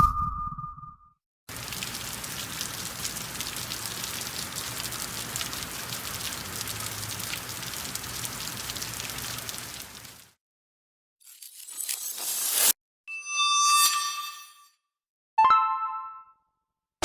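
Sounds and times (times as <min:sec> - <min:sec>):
steady rain falling: 0:01.5 - 0:10.4.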